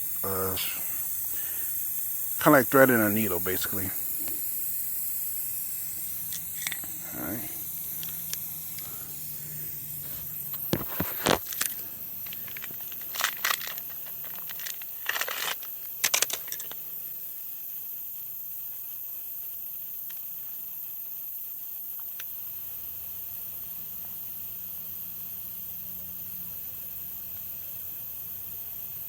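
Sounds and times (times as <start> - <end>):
clicks and rustles of tire plug: 10.5 - 16.8.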